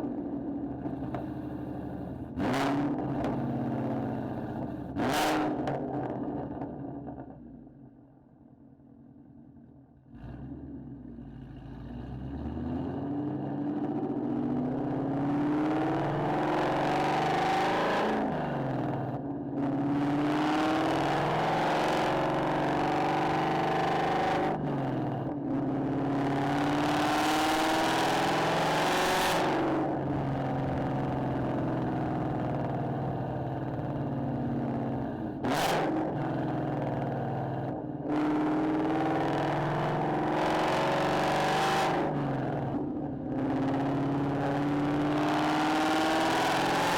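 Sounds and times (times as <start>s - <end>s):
car engine accelerating: 10.1s - 46.9s.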